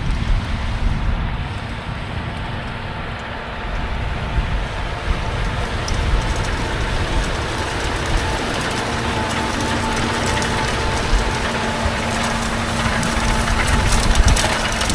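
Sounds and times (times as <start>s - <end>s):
heavy farm machinery rumbling: 0.0s - 14.9s
wind buffeting microphone: 0.0s - 14.9s.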